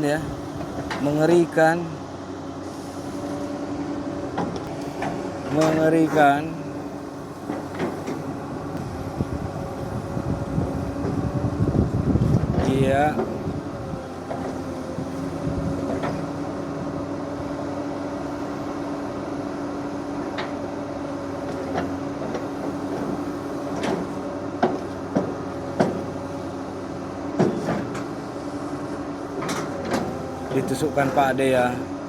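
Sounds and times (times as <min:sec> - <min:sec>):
diesel engine running: 0:00.0 - 0:32.0
machine knocks and clunks: 0:21.5 - 0:26.2, 0:27.3 - 0:28.1.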